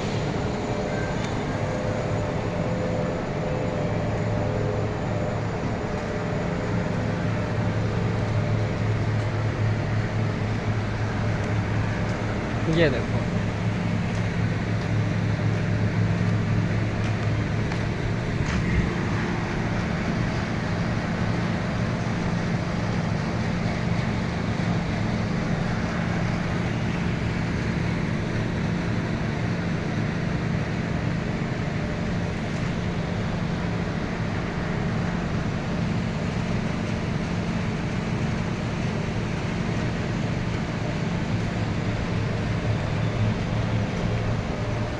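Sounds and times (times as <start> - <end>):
machine motor humming: 6.0 - 20.9.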